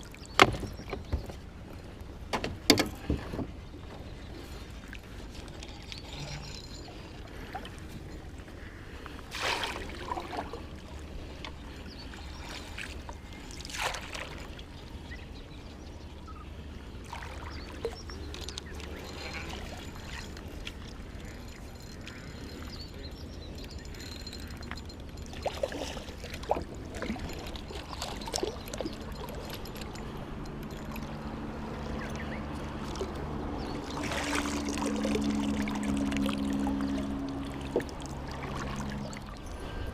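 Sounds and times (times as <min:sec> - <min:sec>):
water trickling and lapping: 0:00.0 - 0:39.9
water splashes: 0:09.2 - 0:11.4, 0:12.2 - 0:14.7, 0:17.0 - 0:22.4, 0:24.7 - 0:39.9.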